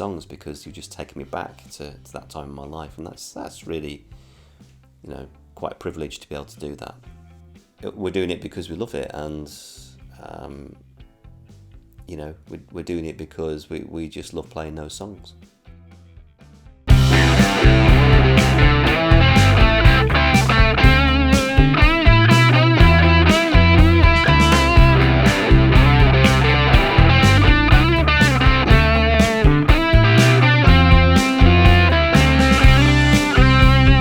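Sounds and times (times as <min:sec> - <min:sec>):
drums beating: 0:16.9 - 0:34.0
rock music: 0:16.9 - 0:34.0.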